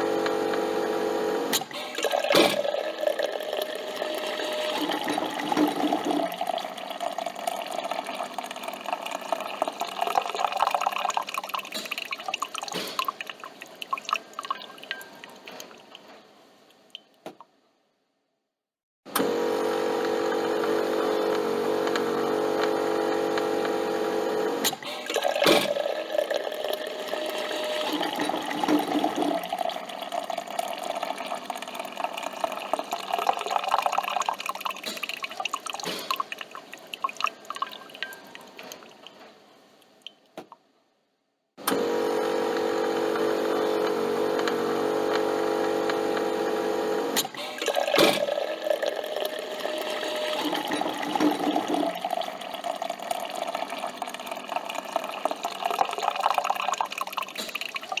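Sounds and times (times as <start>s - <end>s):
coffee machine pump humming: 0.0s - 12.8s, 19.1s - 36.0s, 41.6s - 58.0s
coffee dripping into cup: 2.0s - 15.7s, 25.1s - 39.2s, 47.6s - 58.0s.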